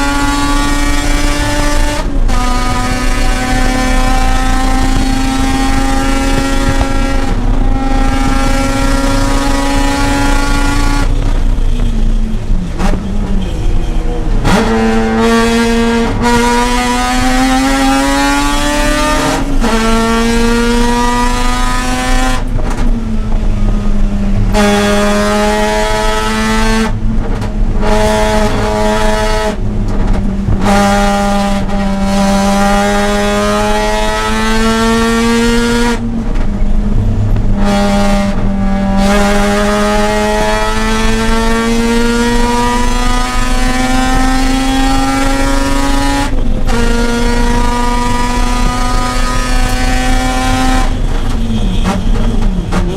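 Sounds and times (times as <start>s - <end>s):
rotary engine at full throttle: 0.0s - 52.9s.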